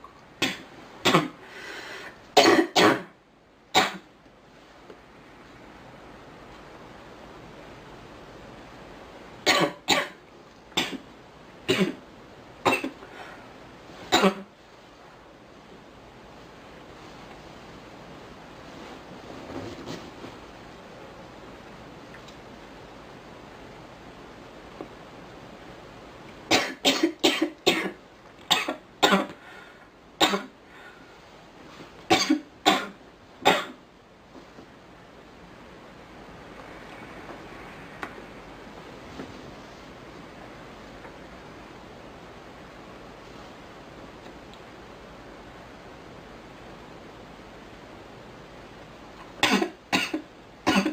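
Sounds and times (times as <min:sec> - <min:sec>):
girl coughing: 0:00.4 - 0:01.4, 0:02.4 - 0:03.2, 0:09.5 - 0:10.2, 0:11.7 - 0:12.0, 0:12.7 - 0:13.0, 0:14.1 - 0:14.5, 0:26.5 - 0:29.3, 0:32.1 - 0:33.8, 0:49.4 - 0:50.9.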